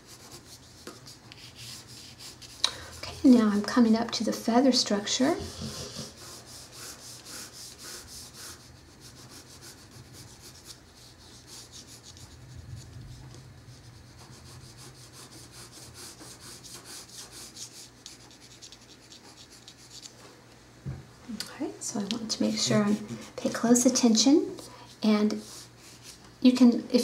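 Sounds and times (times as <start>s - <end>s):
pencil scratching on paper: 0.0s - 3.4s, 5.2s - 20.1s, 25.3s - 26.2s.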